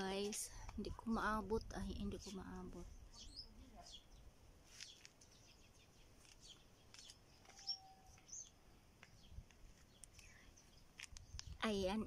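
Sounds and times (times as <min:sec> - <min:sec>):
high bird chirps: 0:02.9 - 0:11.6.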